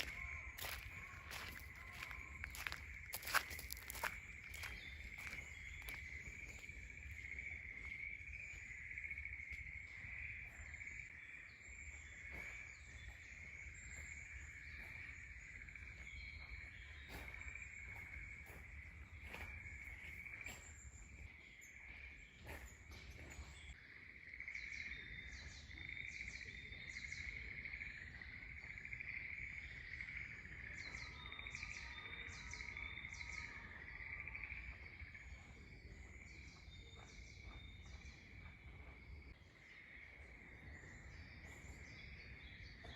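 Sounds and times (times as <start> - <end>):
birds chirping: 0.0 - 23.8.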